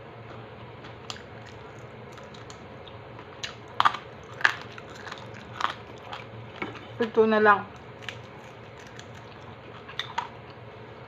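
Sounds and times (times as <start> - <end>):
crispy snack crunching: 3.2 - 10.4.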